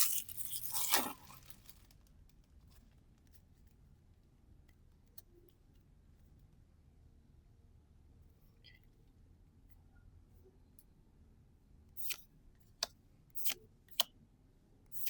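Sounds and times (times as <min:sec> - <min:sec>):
card pack wrapper crinkling: 0:00.0 - 0:01.9.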